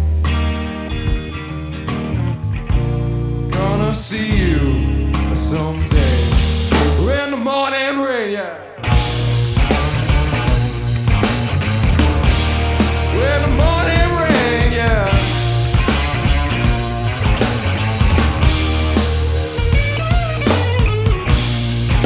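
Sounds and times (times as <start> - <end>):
heavy bass line: 0.0 - 7.3, 8.9 - 22.0
live rock band: 0.0 - 7.6, 8.4 - 22.0
pitch-bending lead melody: 0.2 - 7.2, 9.0 - 22.0
drum kit beat: 5.9 - 7.2, 8.9 - 22.0.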